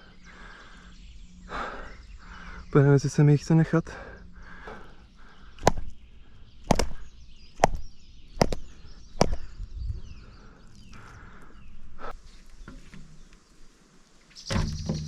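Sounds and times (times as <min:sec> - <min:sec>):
sharp chopping blows: 0:05.6 - 0:06.0, 0:06.6 - 0:09.5.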